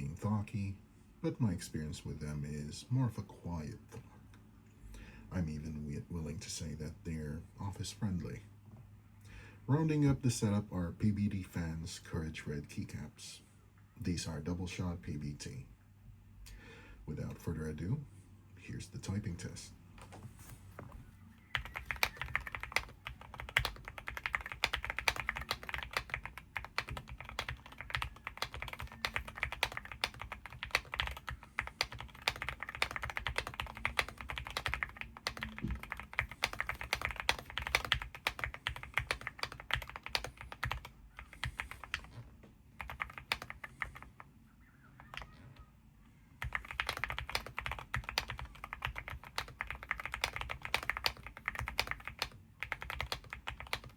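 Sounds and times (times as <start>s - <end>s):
fast typing on mechanical keyboard: 21.5s - 42.1s, 42.8s - 44.1s, 46.4s - 53.9s.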